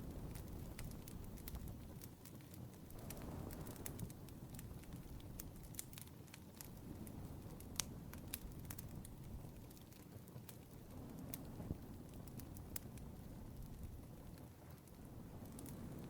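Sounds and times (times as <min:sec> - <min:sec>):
faint irregular crackling clicks: 0:00.0 - 0:16.0
low steady rumble: 0:02.9 - 0:05.7.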